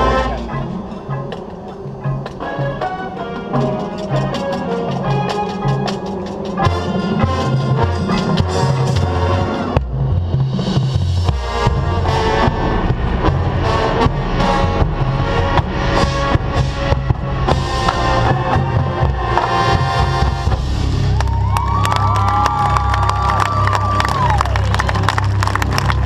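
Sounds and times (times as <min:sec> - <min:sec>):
brass holding sustained chords: 0:00.0 - 0:10.3, 0:11.2 - 0:21.2
drumline playing: 0:00.0 - 0:26.0.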